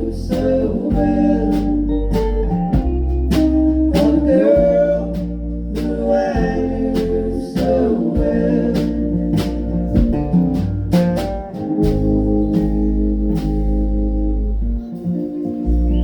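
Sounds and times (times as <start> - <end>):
person singing: 0.0 - 2.9, 3.8 - 10.1
guitar: 0.0 - 16.0.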